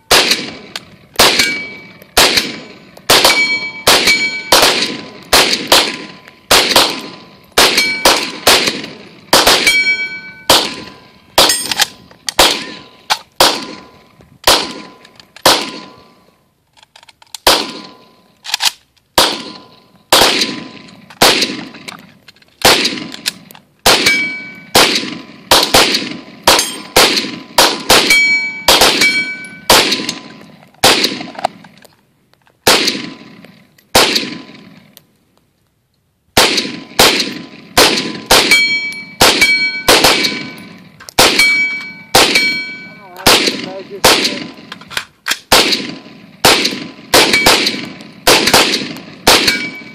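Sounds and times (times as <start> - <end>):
rifle shots: 0.0 - 16.2, 17.4 - 22.0, 22.6 - 31.7, 32.6 - 34.9, 36.4 - 49.9
metallic ping of target: 9.6 - 10.5.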